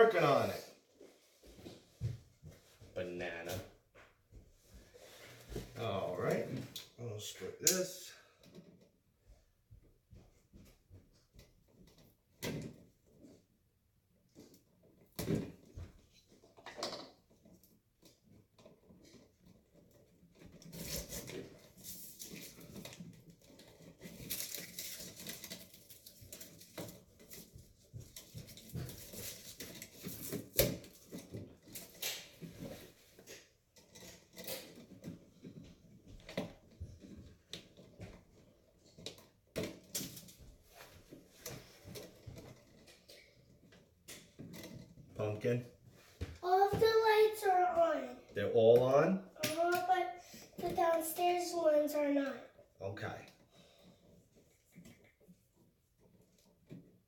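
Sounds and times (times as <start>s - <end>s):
scraping and rustling: 14.2s - 48.2s.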